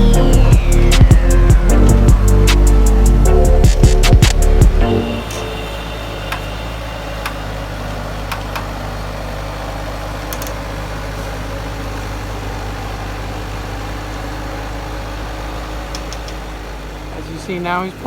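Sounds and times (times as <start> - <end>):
skid steer engine running: 0.0 - 18.0.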